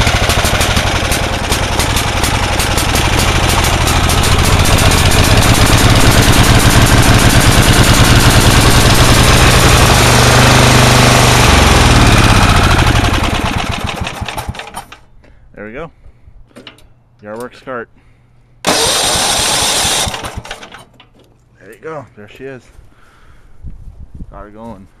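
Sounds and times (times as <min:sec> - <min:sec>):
small gasoline engine running: 0:00.0 - 0:15.0, 0:18.7 - 0:20.8.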